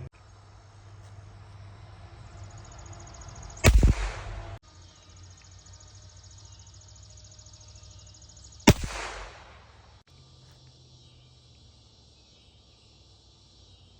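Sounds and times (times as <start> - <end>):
suppressed gunshot: 3.6 - 4.6, 8.7 - 9.8.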